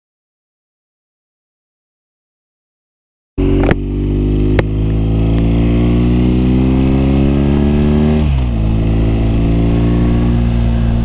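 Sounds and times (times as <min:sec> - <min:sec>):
motorcycle engine running: 0:03.4 - 0:11.0.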